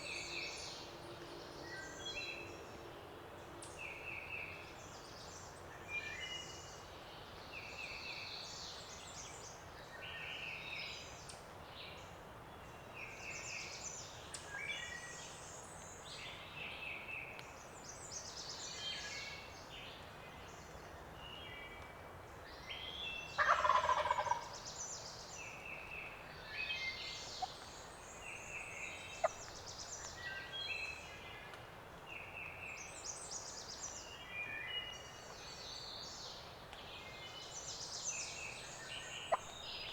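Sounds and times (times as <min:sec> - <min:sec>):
songbirds singing and chirping: 0:13.0 - 0:39.9
turkey gobbling: 0:23.4 - 0:24.5.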